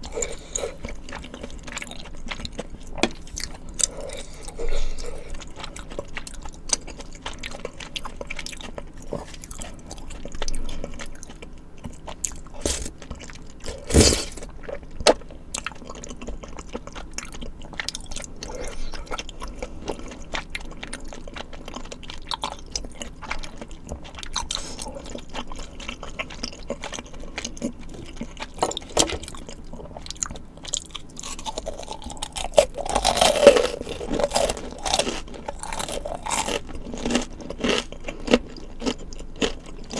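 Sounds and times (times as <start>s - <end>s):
close-miked chewing and crunching: 0.0s - 39.9s.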